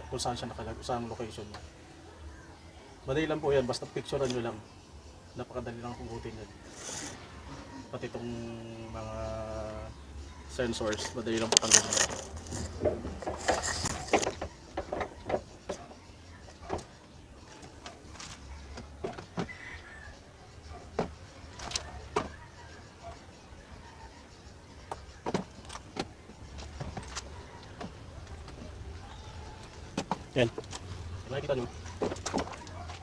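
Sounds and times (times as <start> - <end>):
rustling: 10.8 - 15.9.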